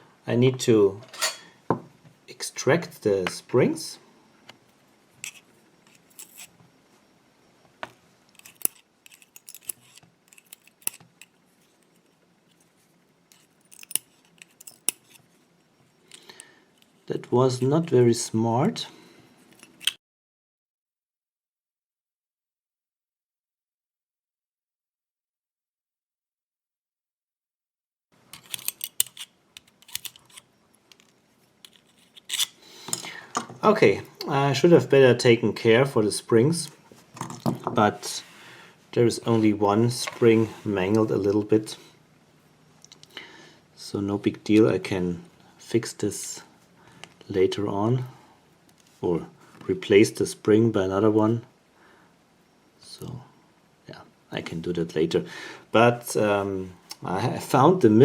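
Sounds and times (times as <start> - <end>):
small metal parts clicking: 5.2 - 6.5, 8.3 - 12.1, 13.3 - 15.2, 28.3 - 33.1.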